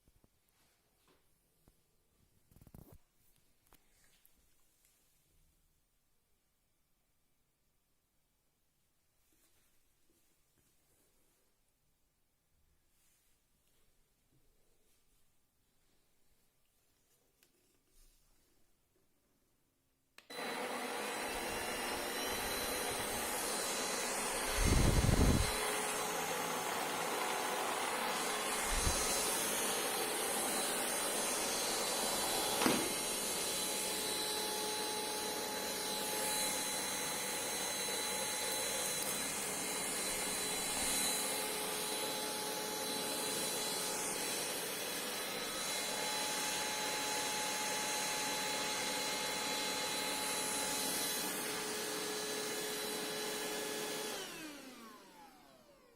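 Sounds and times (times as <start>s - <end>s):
cordless vacuum cleaner whine: 20.2s - 55.9s.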